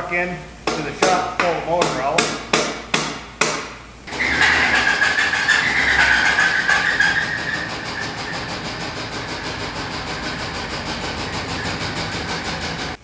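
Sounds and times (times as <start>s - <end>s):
engine running: 4.1s - 13.0s
high squeal: 4.1s - 13.0s.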